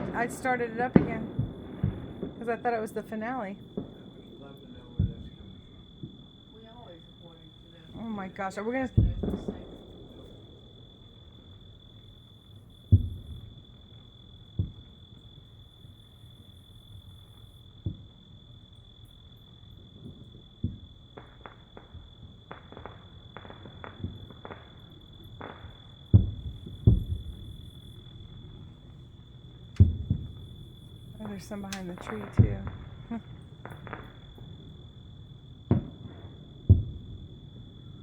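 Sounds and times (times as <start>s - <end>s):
fireworks crackling bursts: 0.0s - 18.2s, 20.0s - 38.0s
distant fireworks booms: 0.0s - 38.0s
night insects droning: 0.0s - 38.0s.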